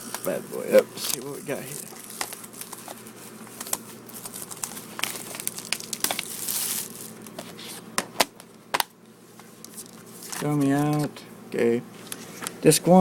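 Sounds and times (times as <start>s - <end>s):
packaging crinkling: 1.0s - 7.8s.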